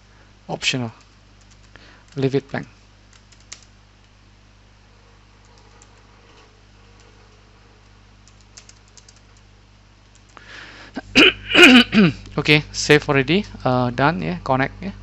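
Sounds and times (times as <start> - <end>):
low electrical hum: 0.0 - 15.0
computer keys clicking: 1.0 - 4.1, 5.4 - 6.1, 8.2 - 10.4.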